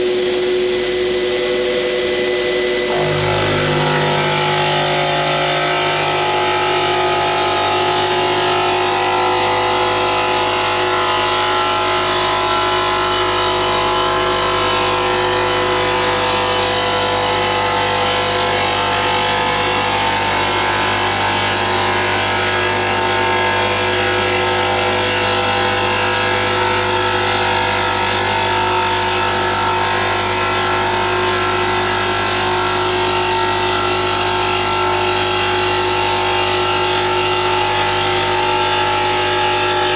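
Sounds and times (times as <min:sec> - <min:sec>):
spindle motor whine: 0:00.0 - 0:39.9
rushing grinding noise: 0:02.9 - 0:10.6.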